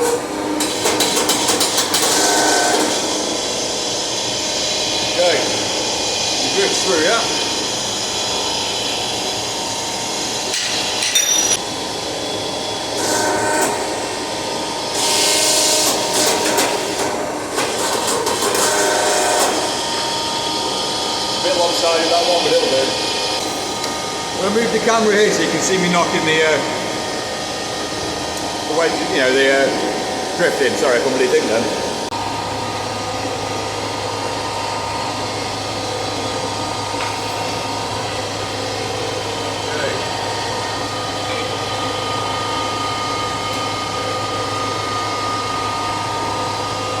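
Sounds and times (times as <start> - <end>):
forge running: 0.0 - 47.0
machinery humming: 0.0 - 47.0.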